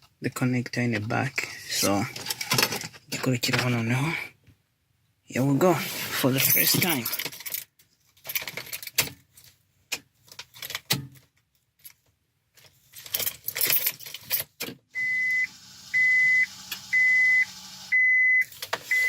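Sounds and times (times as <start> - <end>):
car keys jangling and clicking: 6.3 - 9.4, 11.8 - 14.6
steady high beep: 15.0 - 19.0.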